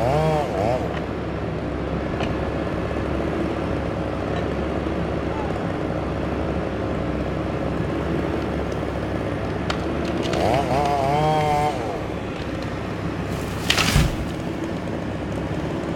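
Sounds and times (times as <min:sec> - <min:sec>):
loud crash with low thud: 0:13.4 - 0:14.5.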